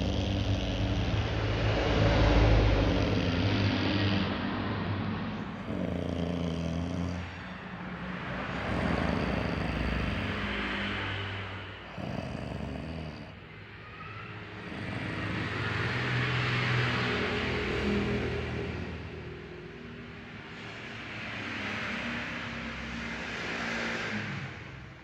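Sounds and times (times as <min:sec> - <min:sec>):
woman snoring: 0:00.0 - 0:01.4, 0:02.1 - 0:04.3, 0:05.4 - 0:07.4, 0:08.5 - 0:10.5, 0:11.9 - 0:13.4, 0:14.6 - 0:16.1.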